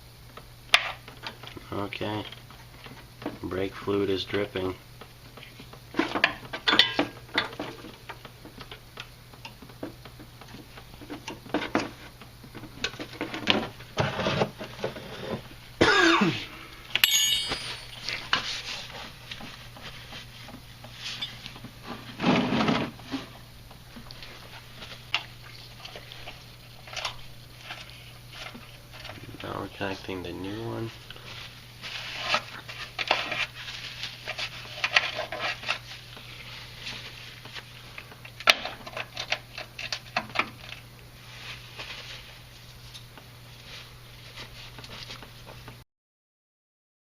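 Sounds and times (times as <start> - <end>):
metal tools clinking: 17.0 - 18.4.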